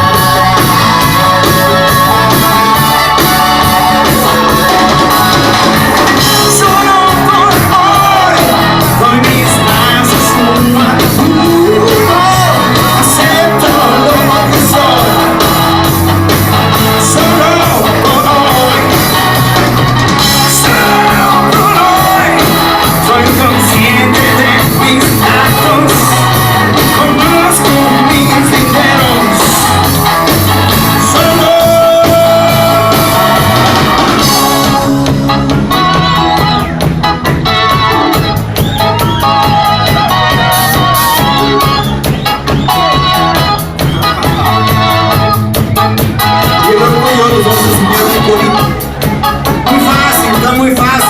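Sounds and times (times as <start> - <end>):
person singing loudly: 0.0 - 15.8, 16.7 - 19.5, 20.2 - 30.0, 30.8 - 35.1, 46.4 - 48.8, 49.6 - 51.0
rock band playing live: 0.0 - 51.0.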